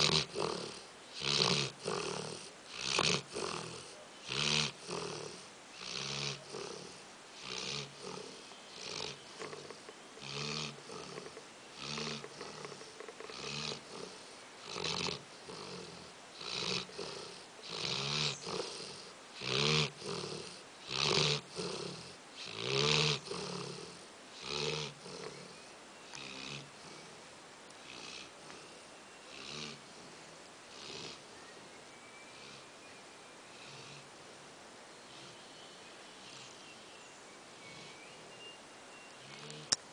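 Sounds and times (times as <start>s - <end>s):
person snoring: 0.0s - 27.2s.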